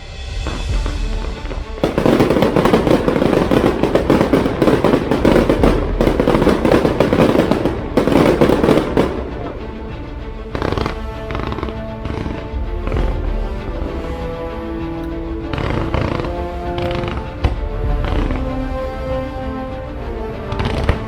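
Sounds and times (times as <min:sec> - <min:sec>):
fireworks crackling: 0:00.5 - 0:09.5.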